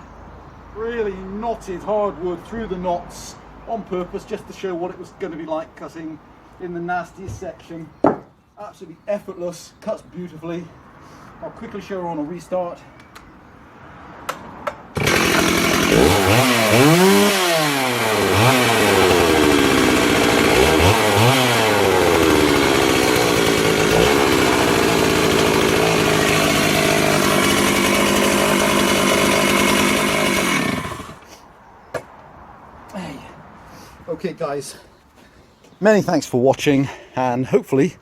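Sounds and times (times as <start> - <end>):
chainsaw revving and idling: 15.0 - 31.3.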